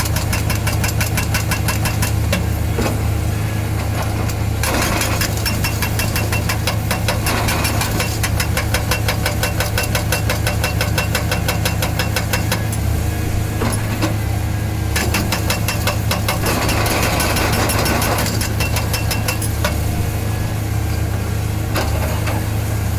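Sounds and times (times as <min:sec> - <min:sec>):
diesel engine running: 0:00.0 - 0:22.9
hydraulic breaker hammering: 0:03.8 - 0:14.3, 0:14.9 - 0:22.5.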